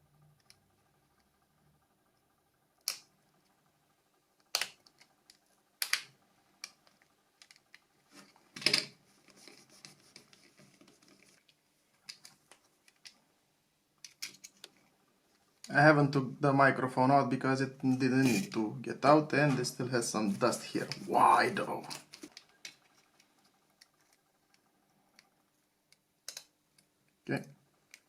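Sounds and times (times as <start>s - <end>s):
plastic phone parts clicking: 4.4s - 5.1s, 14.0s - 14.8s, 25.9s - 26.9s.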